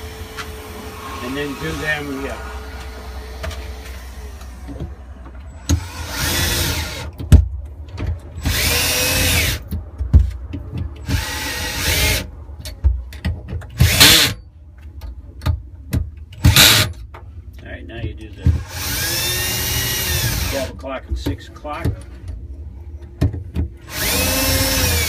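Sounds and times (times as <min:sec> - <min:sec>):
power drill-driver whining: 0:05.7 - 0:07.1, 0:08.4 - 0:09.6, 0:13.8 - 0:14.4, 0:16.4 - 0:16.9, 0:18.6 - 0:20.7, 0:23.8 - 0:25.0.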